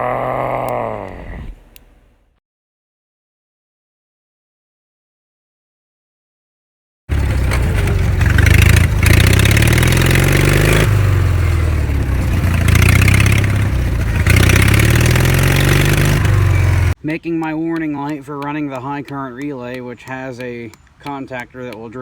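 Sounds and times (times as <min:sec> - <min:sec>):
engine revving: 0:07.1 - 0:17.0.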